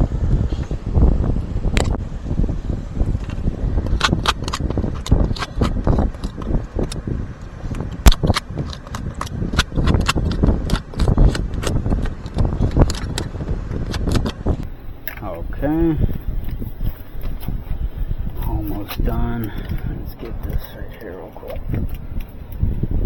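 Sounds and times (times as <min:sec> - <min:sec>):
low rumble: 0:14.5 - 0:23.0.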